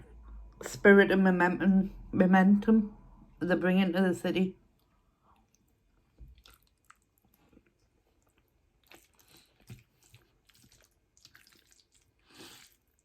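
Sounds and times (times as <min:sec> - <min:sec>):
close-up chewing: 0:04.8 - 0:13.0.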